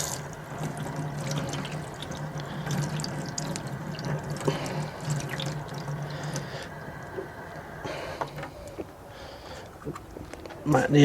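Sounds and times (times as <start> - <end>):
water splashing in a sink: 0.0 - 8.8
low steady hum: 0.0 - 11.0.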